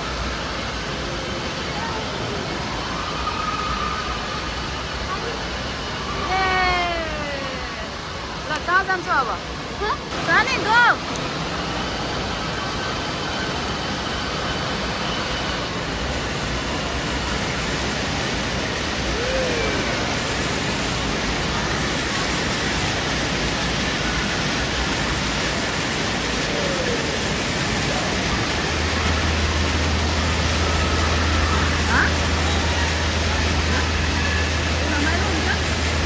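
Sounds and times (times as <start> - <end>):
running and splashing water: 0.0 - 36.0
faint voices: 9.6 - 36.0.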